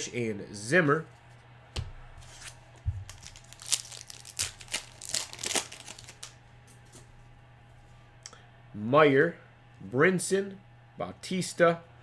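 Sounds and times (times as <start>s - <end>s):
foil wrapper crinkling: 2.2s - 6.4s.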